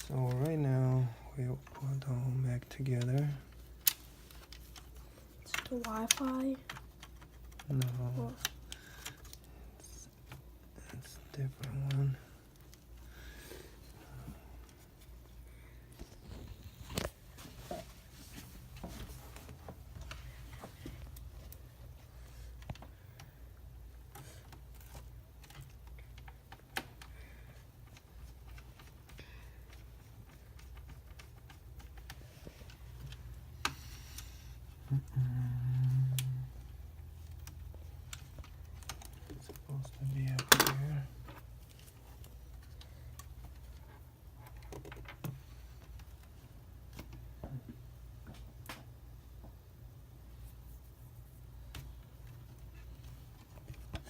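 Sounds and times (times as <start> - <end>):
low steady hum: 0.0 - 54.0
faint clicks and taps: 1.6 - 54.0.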